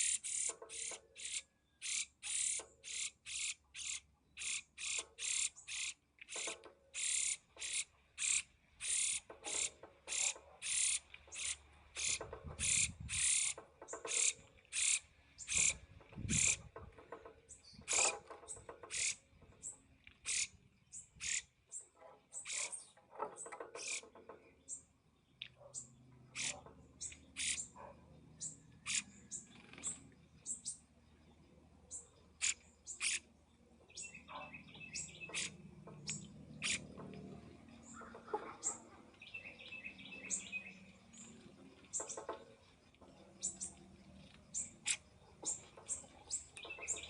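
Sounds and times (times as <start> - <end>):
young bird begging calls: 7.0 - 16.6, 27.4 - 27.7.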